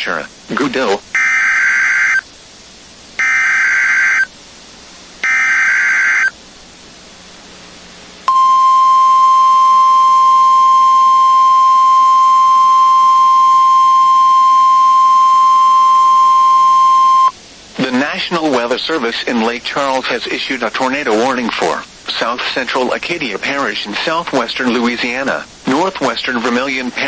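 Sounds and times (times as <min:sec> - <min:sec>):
steady warning alarm tone: 0:01.2 - 0:02.2, 0:03.2 - 0:04.3, 0:05.2 - 0:06.3, 0:08.3 - 0:17.4
screeching digital data bursts: 0:03.2 - 0:04.3, 0:05.2 - 0:06.3.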